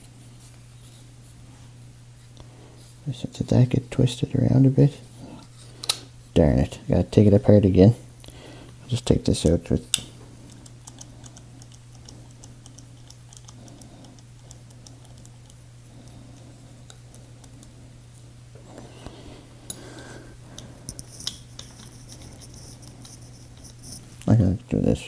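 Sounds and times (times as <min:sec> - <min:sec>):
small tools clicking and tapping: 0:09.9 - 0:15.6.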